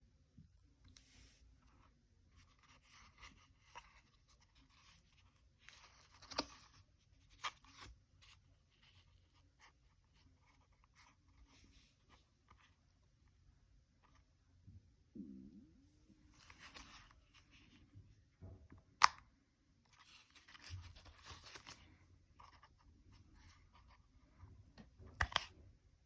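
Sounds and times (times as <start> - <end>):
rustling and scraping of holster: 16.3 - 17.9, 19.9 - 24.0.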